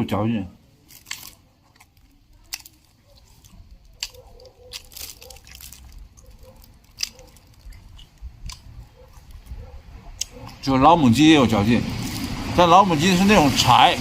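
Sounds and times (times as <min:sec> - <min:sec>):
person chewing: 0:00.8 - 0:10.6
wet mouth clicks: 0:06.2 - 0:09.6, 0:10.2 - 0:10.6.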